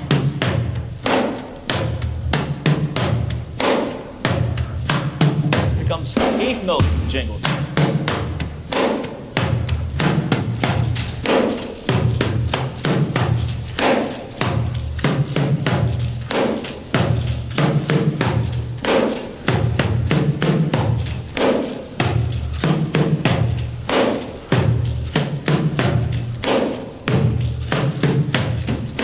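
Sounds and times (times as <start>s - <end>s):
tambourine jingles: 10.3s - 29.0s.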